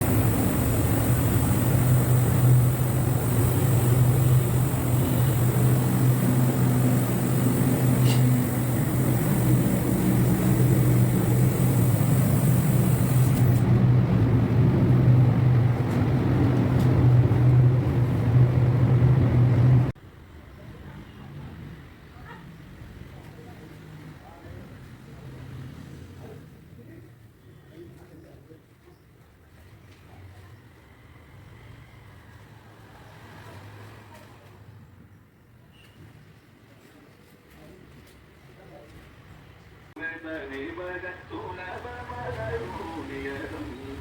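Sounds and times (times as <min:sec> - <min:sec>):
machine humming: 0:00.0 - 0:20.0.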